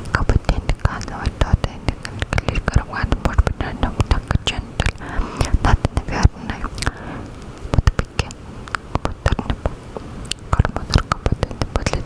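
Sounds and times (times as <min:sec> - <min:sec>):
wet mouth clicks and lip smacks: 0:10.2 - 0:11.4.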